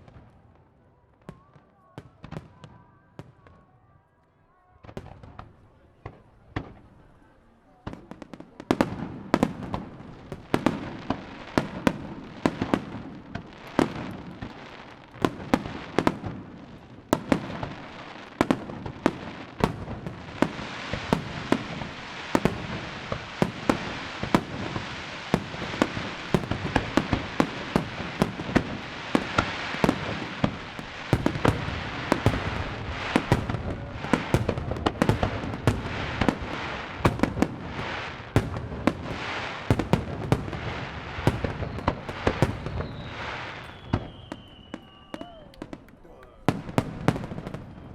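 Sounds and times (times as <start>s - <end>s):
fireworks bursting with sharp bangs: 0.0s - 3.8s, 4.7s - 47.9s
crackling hiss: 9.5s - 47.9s.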